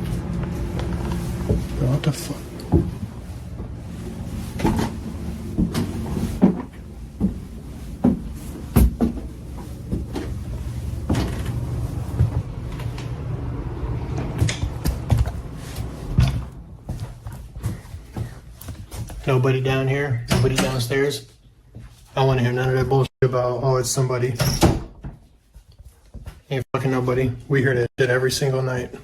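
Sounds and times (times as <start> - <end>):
steady low hum: 0.0 - 20.6.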